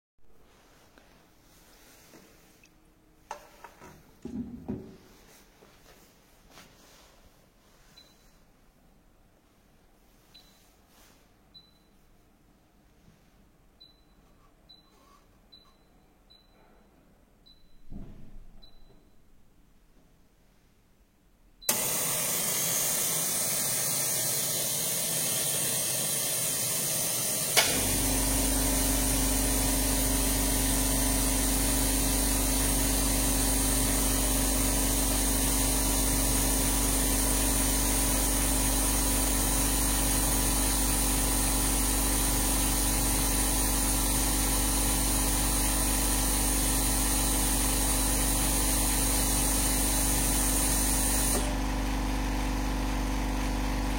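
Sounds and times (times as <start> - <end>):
machine hissing: 21.7 - 51.5
low motor hum: 27.6 - 44.8.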